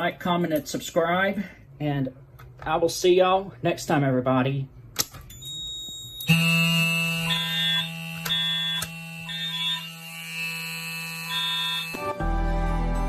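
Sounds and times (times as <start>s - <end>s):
high alarm beeps: 5.3s - 12.1s
steady buzzing tone: 6.2s - 12.2s.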